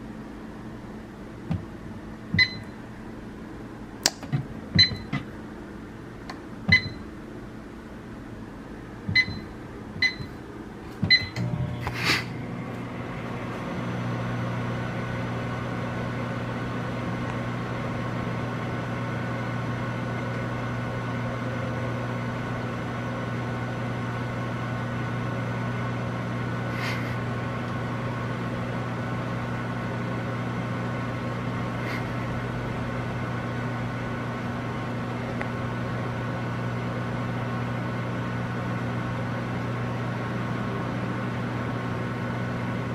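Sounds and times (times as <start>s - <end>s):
microwave humming: 0.0s - 42.9s
microwave keypad beeps: 2.4s - 2.8s, 4.8s - 5.2s, 6.7s - 7.0s, 9.1s - 10.4s, 11.1s - 11.4s
microwave start click: 2.4s - 2.8s, 4.0s - 5.3s, 6.3s - 7.1s, 9.1s - 10.4s, 11.0s - 15.8s.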